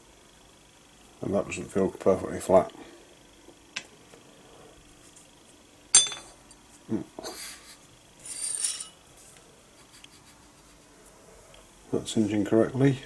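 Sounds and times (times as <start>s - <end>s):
metal clink: 5.9s - 6.4s, 8.4s - 9.0s
metal scraping on metal: 8.2s - 9.0s.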